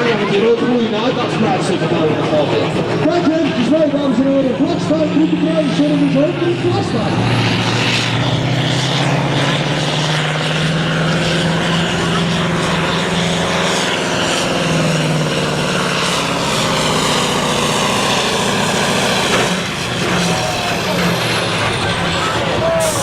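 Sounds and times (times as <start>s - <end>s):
diesel truck engine droning: 0.0s - 23.0s.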